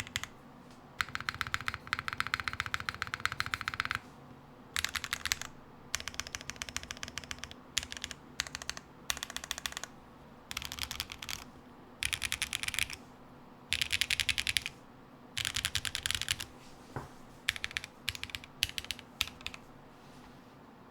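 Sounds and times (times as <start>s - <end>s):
mechanical keyboard typing: 0.0s - 0.3s, 1.0s - 4.0s, 4.8s - 9.9s, 10.5s - 13.0s, 13.7s - 14.8s, 15.4s - 16.5s, 17.5s - 19.6s.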